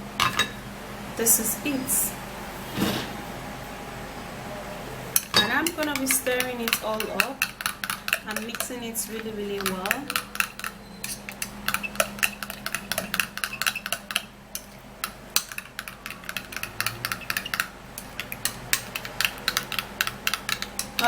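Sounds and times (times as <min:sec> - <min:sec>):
spoon scraping a bowl: 0:05.2 - 0:21.0.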